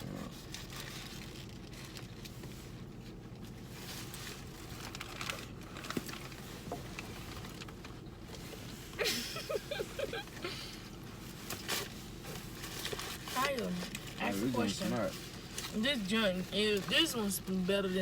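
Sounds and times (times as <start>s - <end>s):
steady low hum: 0.0s - 18.0s
paper wrapper crinkling: 0.4s - 2.8s, 3.6s - 8.0s.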